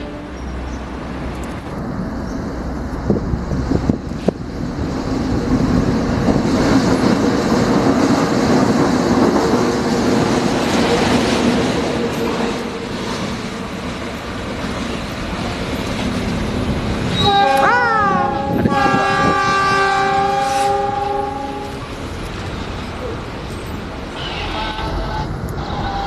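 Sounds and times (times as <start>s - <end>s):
locomotive engine rumble: 0.0s - 26.0s.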